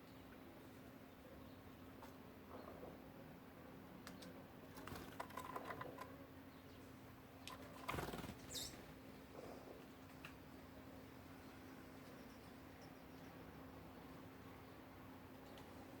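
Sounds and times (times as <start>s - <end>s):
wings fluttering: 4.7s - 6.1s, 7.5s - 8.9s.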